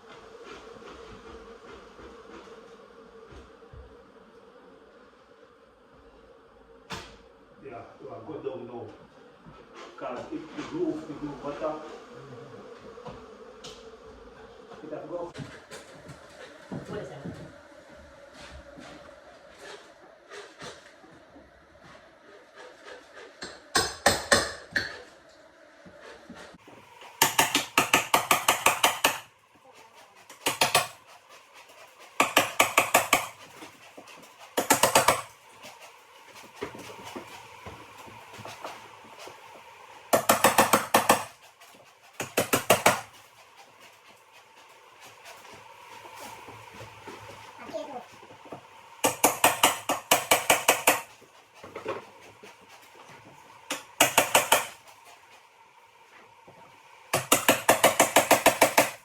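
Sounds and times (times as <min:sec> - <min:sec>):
rapid sharp knocking: 0:27.2 - 0:29.3, 0:30.2 - 0:31.1, 0:32.1 - 0:33.7, 0:34.4 - 0:35.3, 0:40.1 - 0:41.4, 0:42.1 - 0:43.4, 0:49.0 - 0:51.2, 0:53.7 - 0:54.8, 0:57.2 - 0:59.0
sharp clattering knocks: 0:49.0 - 0:51.1, 0:53.7 - 0:54.8.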